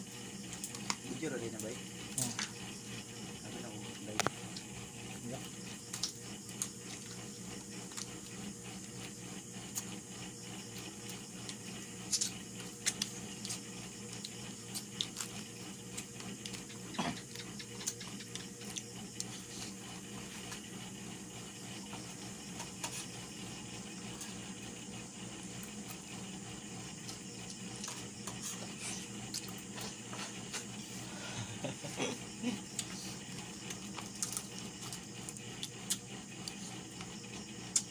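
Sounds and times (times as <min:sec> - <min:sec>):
steady low hum: 0:00.0 - 0:37.9
clicks and cracks of eating: 0:00.2 - 0:01.1, 0:04.2 - 0:20.8, 0:25.4 - 0:26.2, 0:27.0 - 0:30.8, 0:31.9 - 0:37.9.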